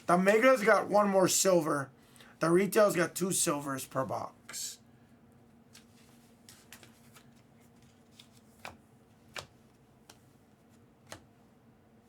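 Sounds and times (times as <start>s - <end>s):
faint steady hum: 0.0s - 12.0s
trading cards rustling and clicking: 5.7s - 10.2s.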